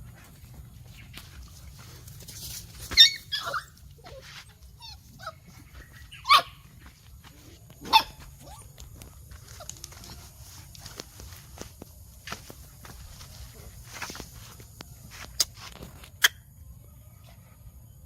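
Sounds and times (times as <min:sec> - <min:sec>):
dogs barking: 0:02.9 - 0:04.3, 0:05.1 - 0:06.9, 0:07.8 - 0:09.1
dog yipping: 0:02.9 - 0:06.7, 0:07.8 - 0:08.7.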